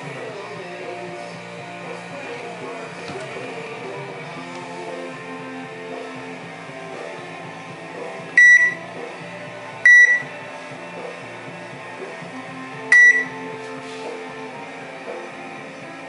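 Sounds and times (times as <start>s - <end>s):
background music: 0.0s - 16.0s
high-pitched electronic beeps: 8.4s - 8.8s, 9.9s - 10.2s, 12.9s - 13.3s.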